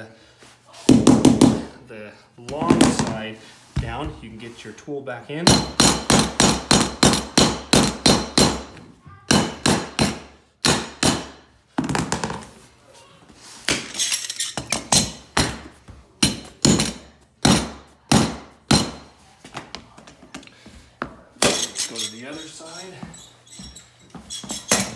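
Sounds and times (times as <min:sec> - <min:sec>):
hammer tapping flooring tool: 0:14.7 - 0:19.1.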